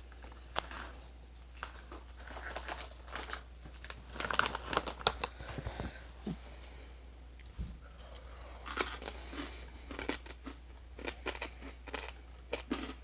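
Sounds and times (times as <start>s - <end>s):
snack bag crinkling: 0.1s - 6.0s, 8.6s - 13.0s.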